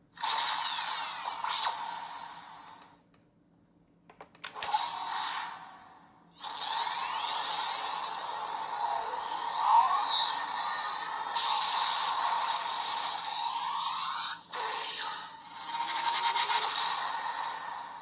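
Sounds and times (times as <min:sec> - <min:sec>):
plastic clicks: 0:04.1 - 0:04.8.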